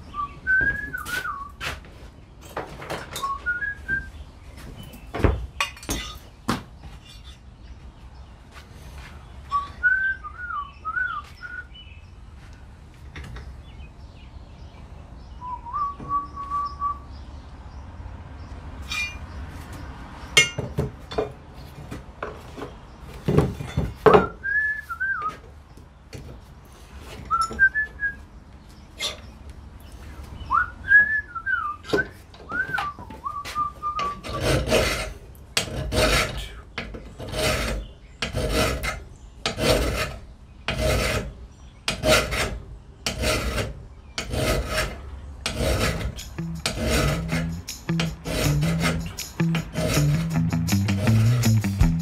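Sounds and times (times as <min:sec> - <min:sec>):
person whistling: 0:00.1 - 0:01.6, 0:09.5 - 0:11.7, 0:15.4 - 0:17.0, 0:24.4 - 0:25.4, 0:27.3 - 0:28.2, 0:30.5 - 0:34.2.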